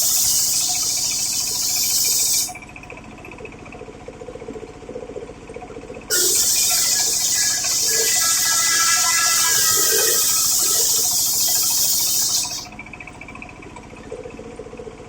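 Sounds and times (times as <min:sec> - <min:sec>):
circular saw cutting wood: 0:00.0 - 0:02.5, 0:06.1 - 0:12.7
saw machine running: 0:00.0 - 0:02.5, 0:06.1 - 0:12.7.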